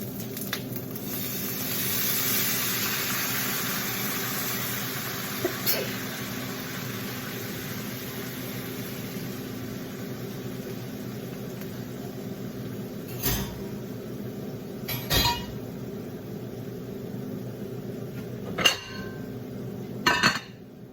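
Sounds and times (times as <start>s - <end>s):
steady low hum: 5.4s - 20.9s
cookware knocking and clinking: 14.9s - 15.6s, 18.5s - 19.2s, 20.0s - 20.6s.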